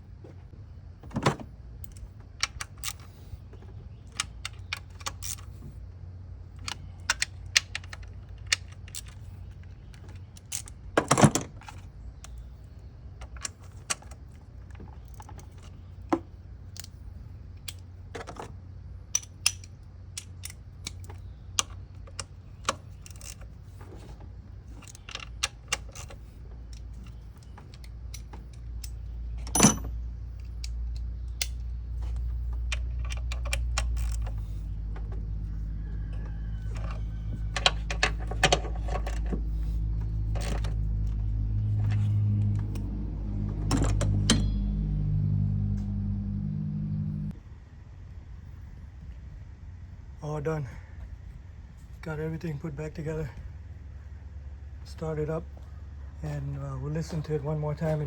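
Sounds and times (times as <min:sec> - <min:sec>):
low steady hum: 0:00.0 - 0:58.0
metal tools clinking: 0:26.9 - 0:30.6.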